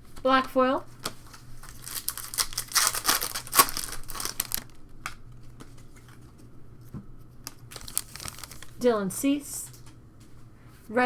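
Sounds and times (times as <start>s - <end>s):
foil wrapper crinkling and tearing: 1.0s - 4.9s, 7.4s - 8.9s.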